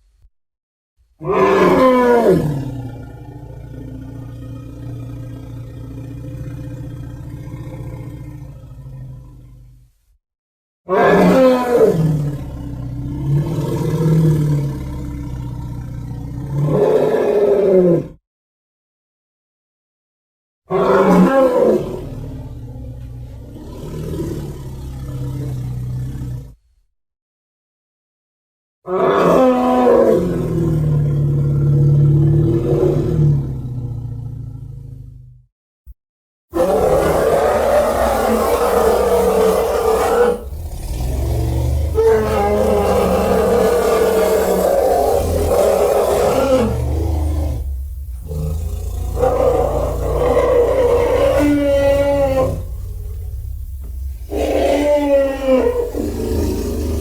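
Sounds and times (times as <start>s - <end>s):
deep aggressive creature roar: 1.2s - 9.4s, 10.9s - 18.2s, 20.7s - 26.6s, 28.9s - 34.9s, 36.6s - 57.0s
low pulsing sound: 45.1s - 57.0s.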